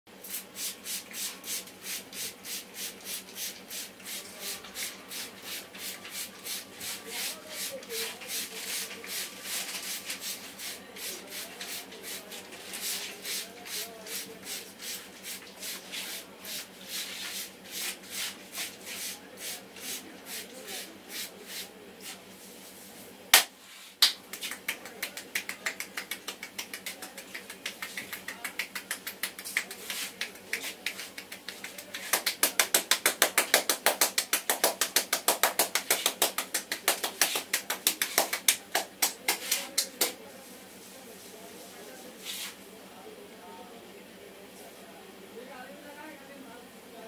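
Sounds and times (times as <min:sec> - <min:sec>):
sharp snap: 0:23.3 - 0:37.4
hands tapping on head: 0:23.4 - 0:40.2.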